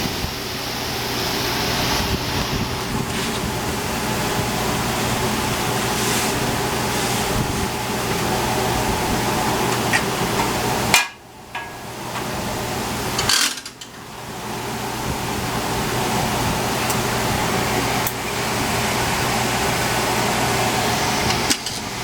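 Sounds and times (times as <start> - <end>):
rush of air: 0.0 - 9.4
workshop machinery humming: 0.0 - 22.0.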